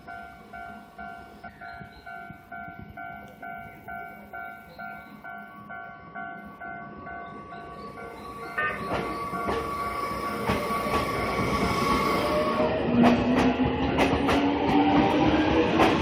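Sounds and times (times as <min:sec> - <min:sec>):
level-crossing warning bell: 0:00.0 - 0:12.7
electric train rumble: 0:00.0 - 0:16.0.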